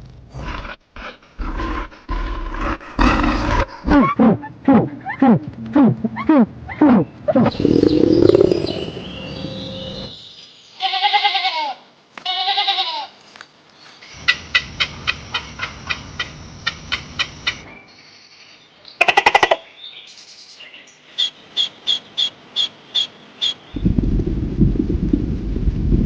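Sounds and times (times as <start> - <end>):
animal bleating calls: 10.8 - 13.1.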